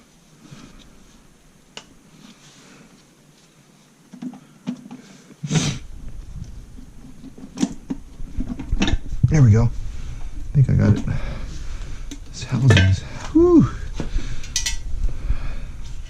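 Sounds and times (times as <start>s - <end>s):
low rubbing and handling noise: 0.0s - 13.1s
clicks and knocks of tools: 14.4s - 14.8s.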